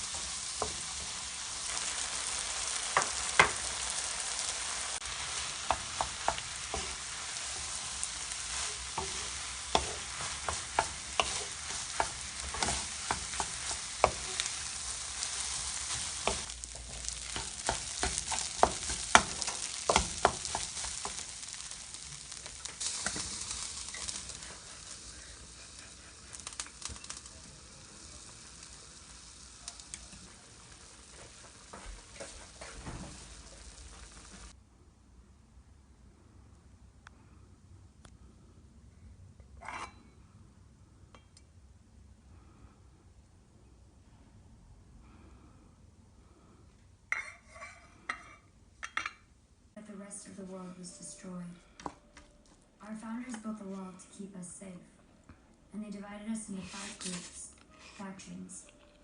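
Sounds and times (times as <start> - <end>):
fried rice sizzling in a pan: 0.0 - 34.6.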